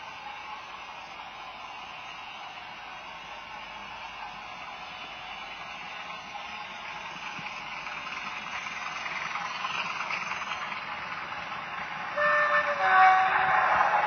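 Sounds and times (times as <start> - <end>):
model train engine sound: 0.0 - 14.0
model train running: 0.0 - 14.0
loud horn tone: 12.2 - 14.0.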